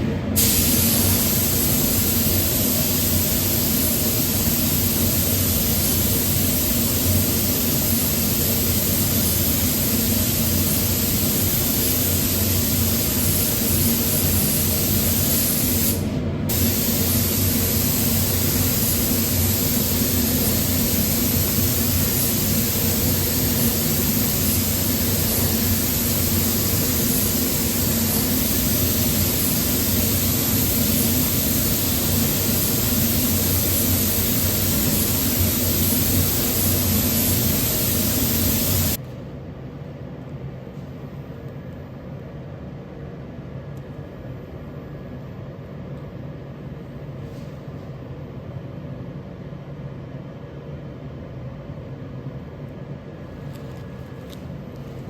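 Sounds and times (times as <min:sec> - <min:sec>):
steady machine hum: 0:00.0 - 0:39.0
paint spray gun hissing: 0:00.4 - 0:39.0.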